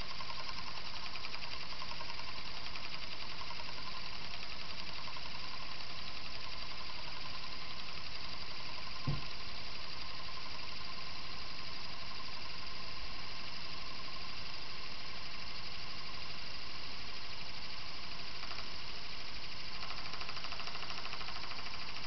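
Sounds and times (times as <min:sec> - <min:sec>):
spinning disk whirring hum: 0:00.0 - 0:22.0
low thump: 0:09.0 - 0:09.3.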